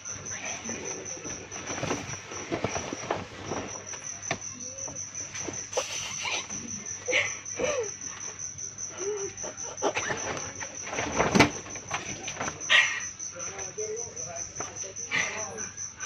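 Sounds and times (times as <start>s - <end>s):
crickets chirping: 0.0s - 16.0s
clicks and rustles: 0.7s - 5.7s, 9.8s - 12.8s.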